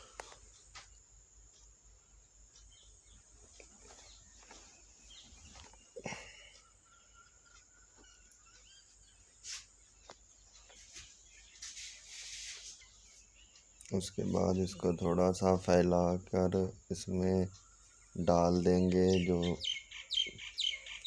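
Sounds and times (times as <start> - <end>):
faint bird call: 3.9 - 9.7.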